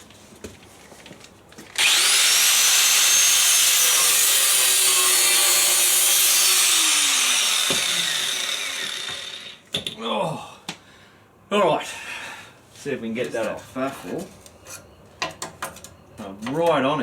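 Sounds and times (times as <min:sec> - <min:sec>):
cut-off disc cutting steel: 0:01.8 - 0:09.6.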